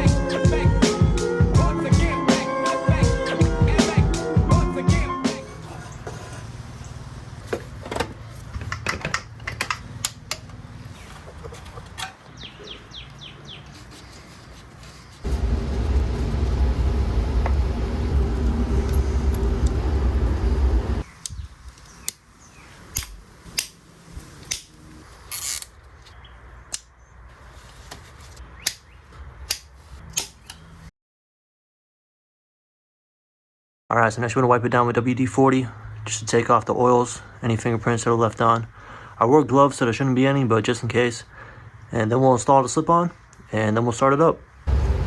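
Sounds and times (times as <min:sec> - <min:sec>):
clicks and knocks of tools: 0:07.8 - 0:10.6
loud rushing noise with low rumble: 0:15.3 - 0:21.1, 0:44.7 - 0:45.0.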